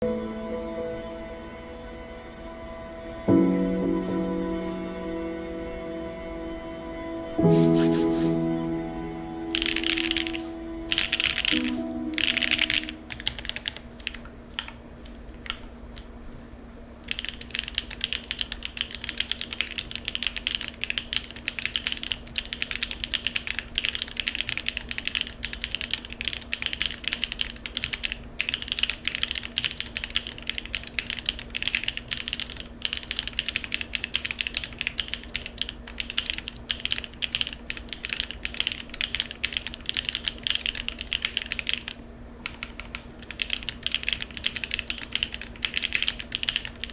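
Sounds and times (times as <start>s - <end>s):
typing on mechanical keyboard: 9.6s - 15.6s, 17.1s - 46.9s.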